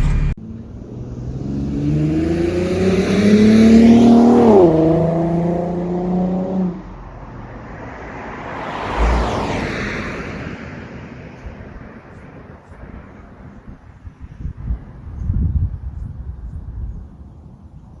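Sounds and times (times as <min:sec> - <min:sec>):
car exhaust accelerating: 0:00.0 - 0:10.3.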